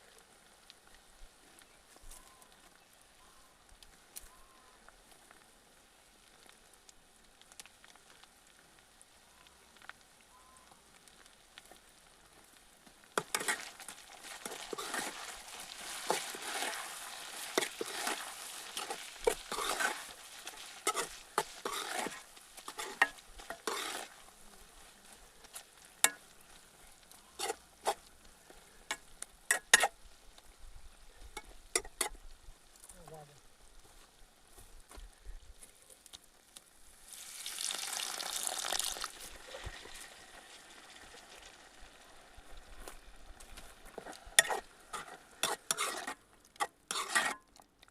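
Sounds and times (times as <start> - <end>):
chicken sizzling in a pan: 0.0 - 34.6, 36.4 - 47.4
utensil scraping and clinking pan: 13.2 - 24.2, 27.3 - 28.0, 28.8 - 29.9, 31.3 - 32.2, 43.9 - 47.6.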